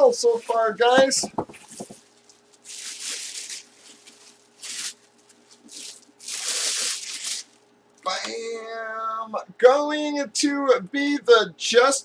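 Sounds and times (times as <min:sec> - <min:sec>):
packaging rustling and crackling: 0:00.2 - 0:07.7.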